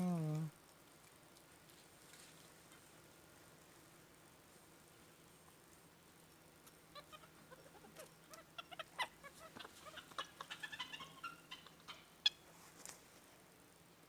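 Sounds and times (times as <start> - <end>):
high-pitched animal calls: 6.9 - 12.4.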